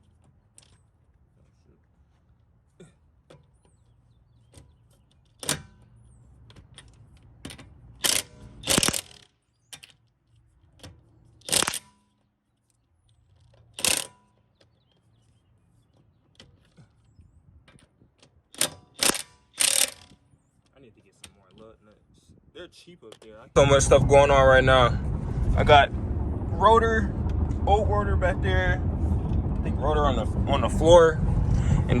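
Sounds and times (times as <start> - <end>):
socket wrench ratcheting: 6.5 - 11.9, 13.3 - 14.6, 17.7 - 20.3.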